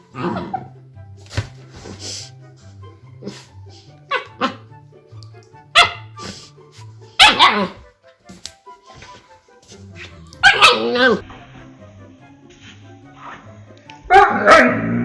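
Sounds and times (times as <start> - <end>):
puppy barking and yowling: 4.1 - 4.6, 7.2 - 7.8, 10.4 - 11.2.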